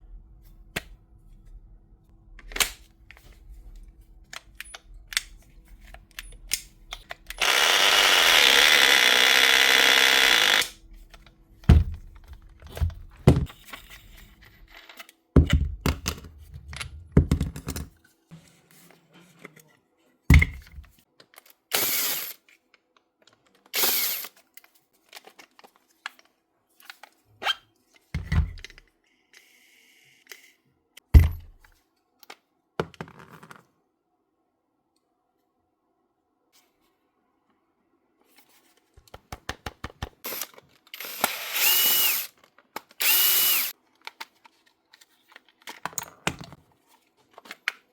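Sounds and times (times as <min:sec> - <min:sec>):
power tool burst: 0:07.4 - 0:10.7, 0:43.0 - 0:43.7.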